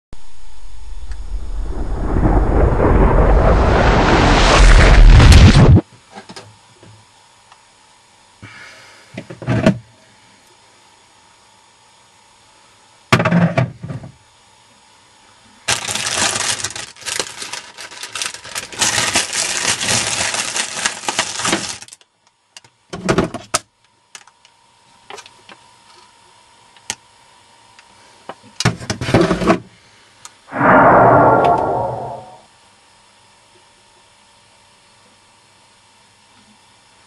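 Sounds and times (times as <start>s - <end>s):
rummaging through fridge packaging: 15.7s - 22.0s.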